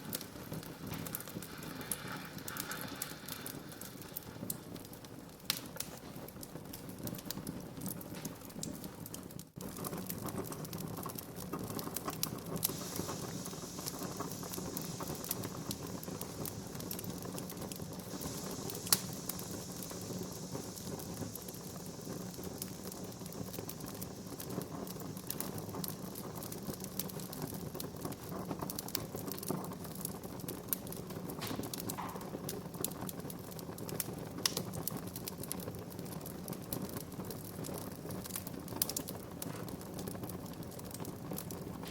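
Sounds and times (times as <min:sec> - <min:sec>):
fire hissing softly: 0:00.0 - 0:41.9
low rumble of fire: 0:00.0 - 0:41.9
wood fire crackling: 0:00.0 - 0:41.9
sharp loud pop: 0:31.4 - 0:32.4.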